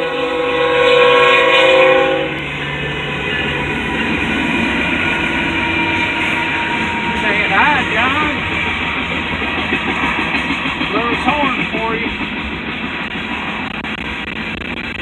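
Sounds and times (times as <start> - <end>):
locomotive air horn: 0.0 - 12.3
train rumbling past: 0.0 - 15.0.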